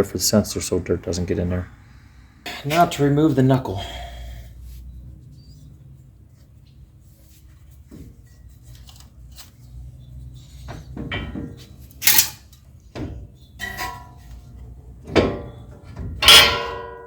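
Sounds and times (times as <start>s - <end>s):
metal clanking: 10.8s - 17.0s
ringing metal strikes: 16.2s - 17.0s.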